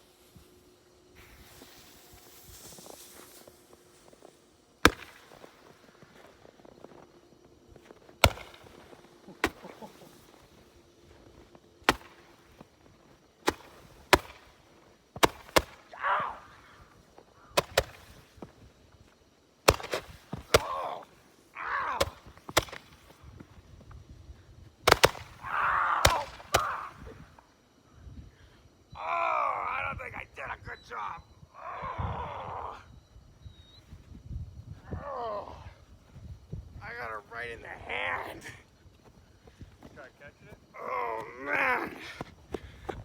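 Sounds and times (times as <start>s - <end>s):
fireworks cracking and popping: 0.0s - 16.0s, 16.9s - 18.7s, 19.6s - 23.6s, 24.8s - 27.4s
fireworks hissing: 0.0s - 27.7s.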